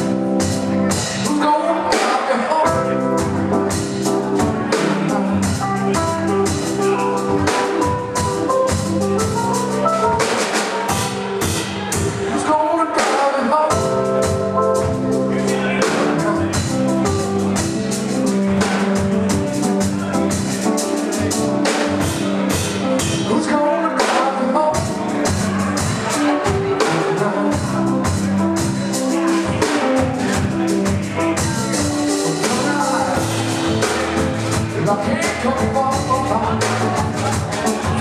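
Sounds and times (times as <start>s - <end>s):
drum kit steady beat: 0.0s - 38.0s
live band playing: 0.0s - 38.0s.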